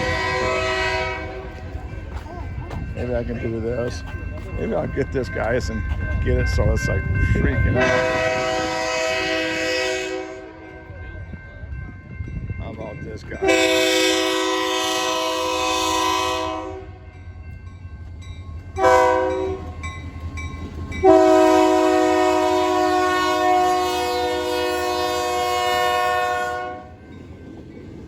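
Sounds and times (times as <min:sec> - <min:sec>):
locomotive air horn blasts: 0:00.0 - 0:01.7, 0:07.7 - 0:10.6, 0:13.4 - 0:17.0, 0:18.8 - 0:19.7, 0:21.0 - 0:27.0
passing train rumble: 0:00.0 - 0:28.0.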